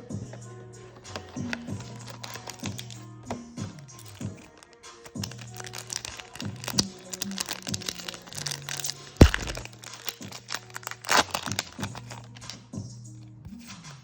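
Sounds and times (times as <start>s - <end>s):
background music: 0.0s - 14.0s
foil wrapper crinkling and tearing: 1.0s - 3.1s, 4.0s - 12.6s
sharp thump: 9.2s - 9.7s.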